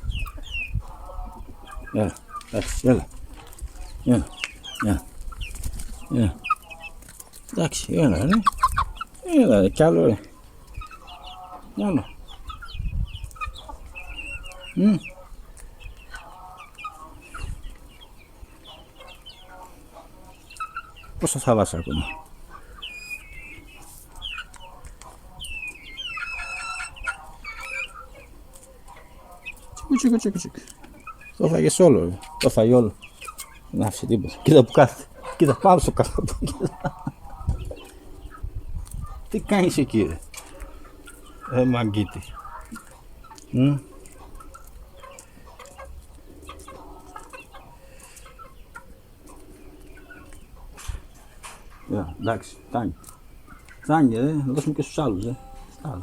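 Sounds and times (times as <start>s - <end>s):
small bird chirping: 0.0s - 0.8s, 20.4s - 24.8s, 25.4s - 30.2s
chicken clucking softly: 0.0s - 56.0s.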